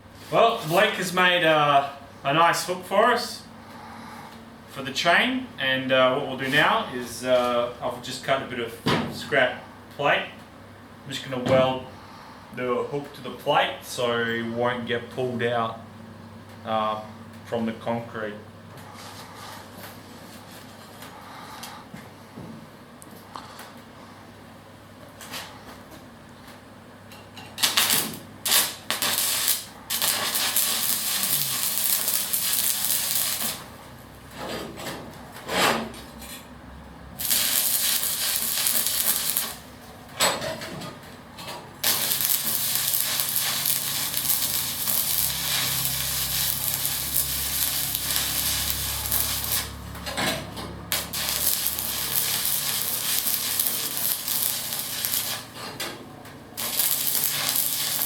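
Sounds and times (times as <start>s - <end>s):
arc welding crackling sizzle: 0.0s - 1.6s, 27.5s - 34.5s, 37.2s - 40.2s, 41.8s - 58.0s.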